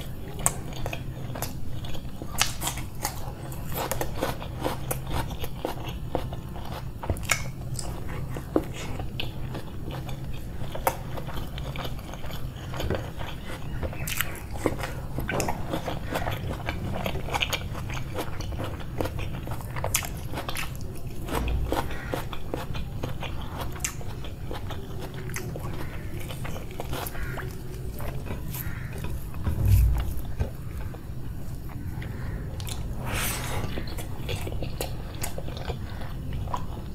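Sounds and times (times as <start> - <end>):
person chewing crunchy food: 0.4 - 30.1, 33.6 - 36.9
low thump: 29.4 - 30.8
low steady hum: 29.4 - 34.9.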